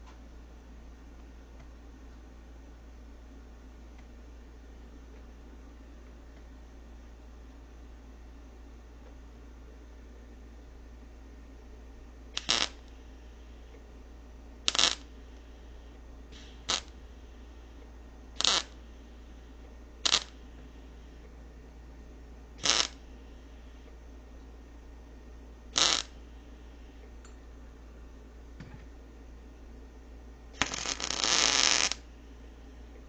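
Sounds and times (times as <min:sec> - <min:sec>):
low steady hum: 0:00.0 - 0:33.0
welder bursts: 0:12.4 - 0:13.8, 0:14.7 - 0:17.8, 0:18.4 - 0:21.3, 0:22.6 - 0:24.0, 0:25.7 - 0:27.0, 0:30.6 - 0:32.1.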